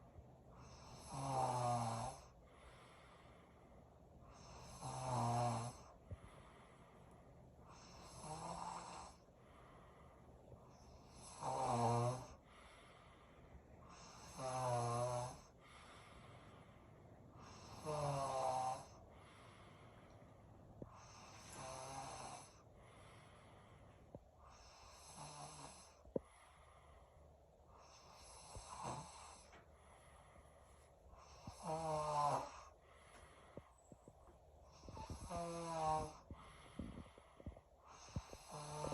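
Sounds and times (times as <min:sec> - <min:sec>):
quiet breathing: 0:00.0 - 0:38.9
person snoring heavily: 0:00.6 - 0:03.2, 0:04.3 - 0:06.6, 0:07.7 - 0:09.2, 0:10.7 - 0:13.0, 0:13.8 - 0:16.6, 0:17.4 - 0:19.9, 0:20.9 - 0:23.8, 0:24.4 - 0:26.7, 0:27.8 - 0:30.4, 0:31.2 - 0:33.7, 0:34.6 - 0:38.9.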